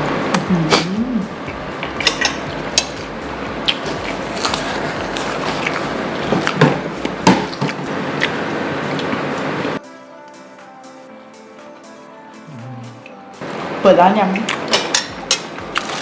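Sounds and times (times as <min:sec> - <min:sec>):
utensils clicking against dishes: 0:01.8 - 0:03.0, 0:14.4 - 0:16.0.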